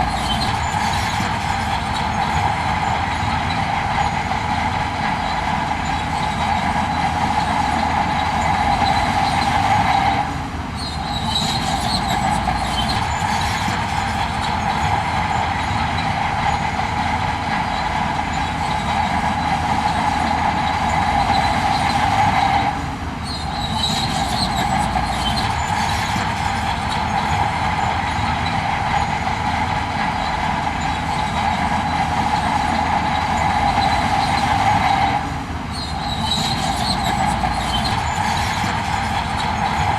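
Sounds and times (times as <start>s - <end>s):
diesel engine running hard: 0.0s - 39.9s
faint squeals: 0.0s - 39.9s
metallic grinding: 23.2s - 39.9s.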